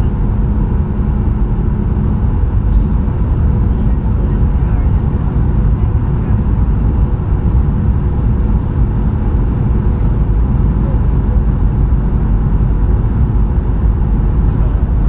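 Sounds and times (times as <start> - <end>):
airplane cabin engine rumble: 0.0 - 15.0.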